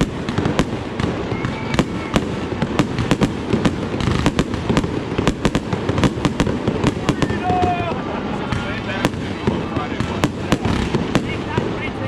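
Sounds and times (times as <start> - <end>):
fireworks bangs and cracks: 0.0 - 12.0
low rumble of fireworks bursts: 0.0 - 12.0.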